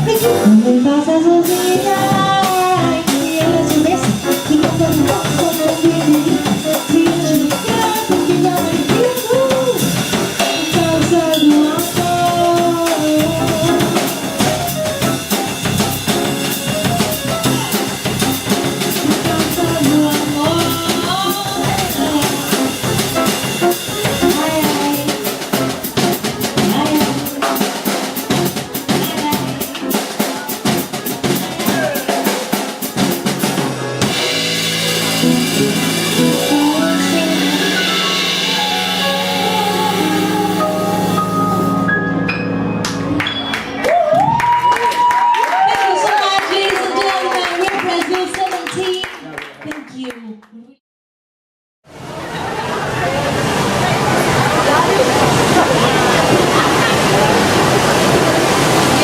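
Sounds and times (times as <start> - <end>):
drum kit playing: 0.0 - 49.0, 54.0 - 59.0
melody line: 34.2 - 43.8.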